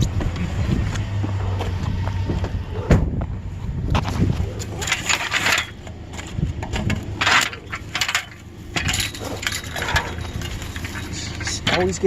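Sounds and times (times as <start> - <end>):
metal bed frame clanking: 4.6 - 12.0.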